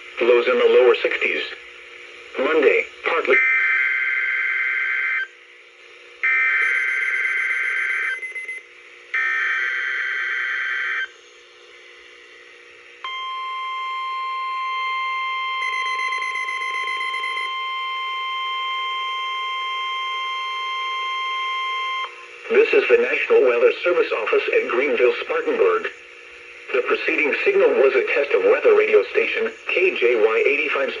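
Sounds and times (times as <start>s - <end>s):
steady warning alarm tone: 3.2s - 5.4s, 6.2s - 11.1s, 13.0s - 22.9s
warbling data tones: 15.6s - 17.7s.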